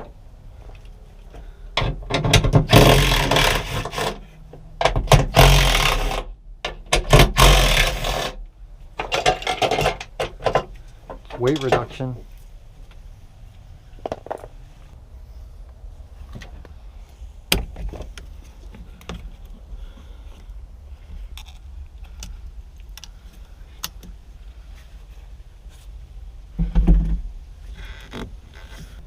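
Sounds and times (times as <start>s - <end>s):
low steady rumble: 0.0s - 29.0s
hand tools clicking and knocking: 1.8s - 8.4s, 9.0s - 12.0s.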